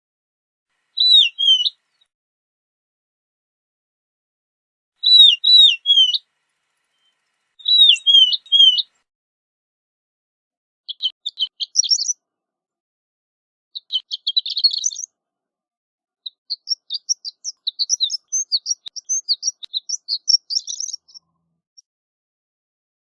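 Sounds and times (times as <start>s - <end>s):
lark singing high quick notes: 1.0s - 1.7s.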